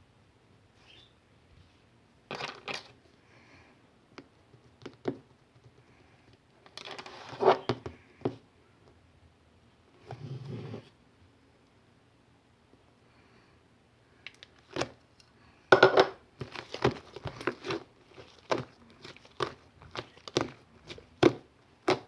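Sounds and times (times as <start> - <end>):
objects rustling: 6.6 - 7.8, 15.8 - 22.0.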